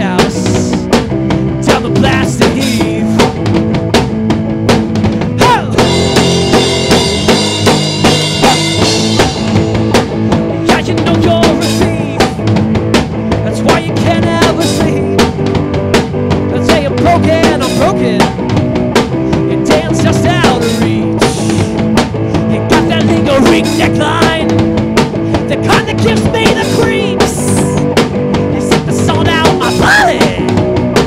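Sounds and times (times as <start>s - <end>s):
drum kit beat: 0.0s - 31.0s
garage rock band instrumental: 0.0s - 31.0s.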